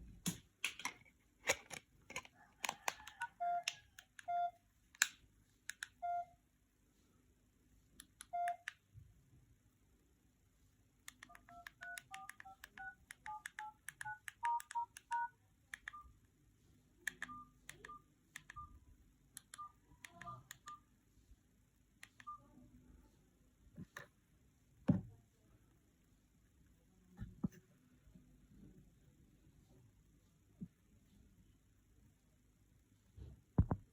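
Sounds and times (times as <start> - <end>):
phone keypad beeps: 2.9 - 4.6, 5.9 - 6.3, 8.2 - 8.7, 11.2 - 16.1, 17.1 - 18.8, 19.4 - 20.8, 22.0 - 22.5.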